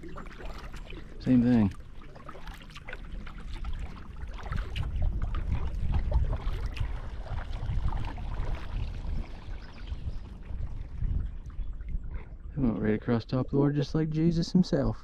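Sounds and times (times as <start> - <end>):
water splashing and lapping: 0.0 - 13.2
wind noise on microphone: 3.4 - 15.0.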